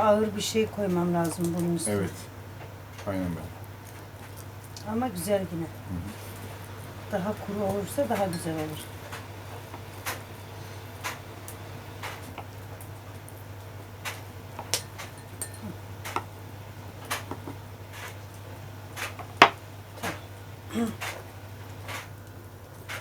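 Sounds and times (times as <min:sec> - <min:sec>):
steady low hum: 0:00.0 - 0:23.0
cutlery and dishes clinking: 0:07.7 - 0:08.9, 0:14.1 - 0:16.2.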